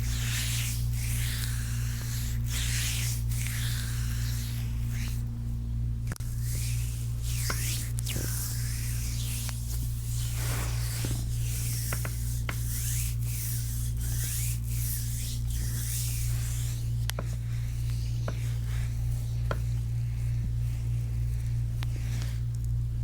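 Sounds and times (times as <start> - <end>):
steady low hum: 0.0 - 23.0
hands rubbing bare foot: 6.1 - 22.8.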